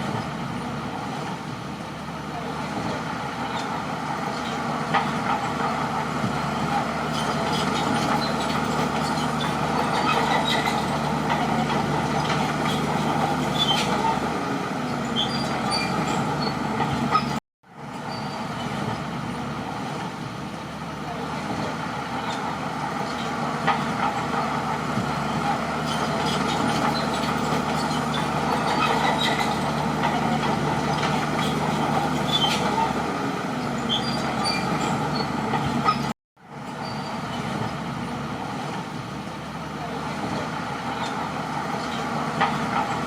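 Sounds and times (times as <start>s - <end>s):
diesel engine running: 0.0s - 43.0s
clicks and short squeaks: 7.1s - 14.2s, 15.0s - 17.4s, 25.4s - 32.9s, 33.7s - 36.1s, 36.7s - 37.6s.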